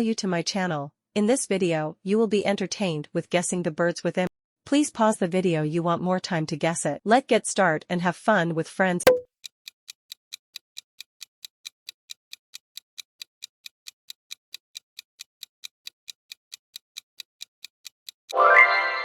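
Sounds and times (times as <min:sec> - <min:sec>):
clock ticking: 0:09.1 - 0:18.4.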